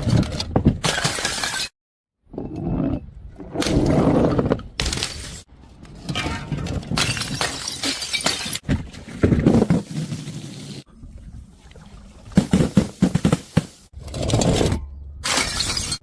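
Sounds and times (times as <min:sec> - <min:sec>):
glass shattering: 0:07.0 - 0:08.6, 0:15.2 - 0:16.0.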